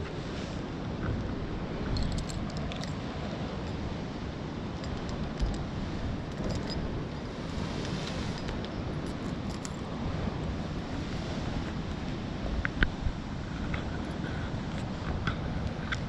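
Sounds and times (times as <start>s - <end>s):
coastal surf: 0.0s - 16.0s
wind buffeting microphone: 0.0s - 16.0s
light clicks and rustles: 0.9s - 3.8s, 4.7s - 6.9s, 7.5s - 9.9s, 13.6s - 16.0s.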